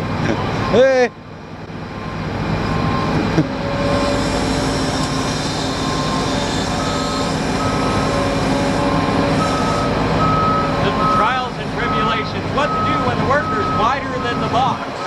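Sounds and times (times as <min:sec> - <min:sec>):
diesel engines running: 0:00.0 - 0:15.0
higher-pitched backup alarm: 0:02.0 - 0:14.8
backup alarm beeping: 0:05.7 - 0:15.0.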